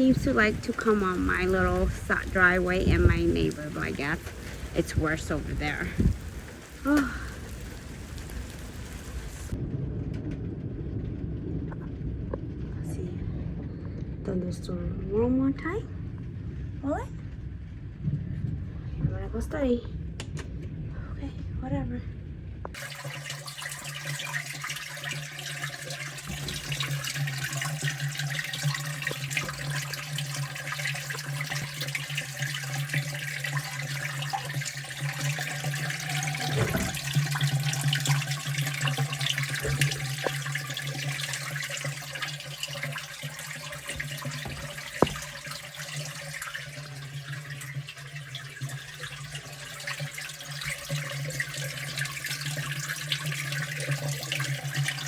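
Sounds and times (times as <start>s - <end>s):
water running and splashing: 0.0s - 9.6s, 22.7s - 55.0s
constant low hum: 0.0s - 22.8s.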